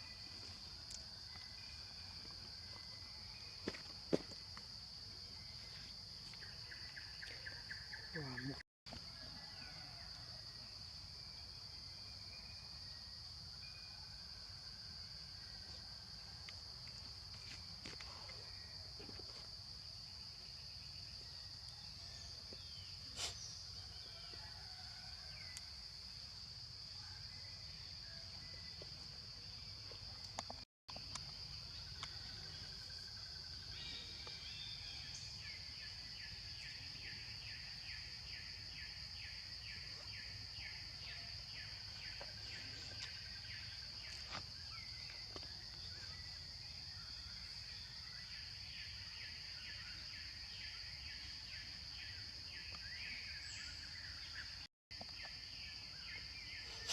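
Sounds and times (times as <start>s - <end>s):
insects droning: 0.0s - 56.9s
faint chirps: 5.3s - 8.6s.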